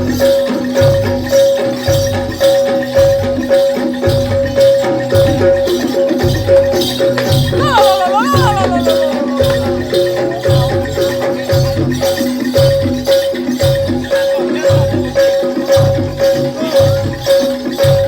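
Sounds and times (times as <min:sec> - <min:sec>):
shaken percussion ticking: 0:00.0 - 0:18.0.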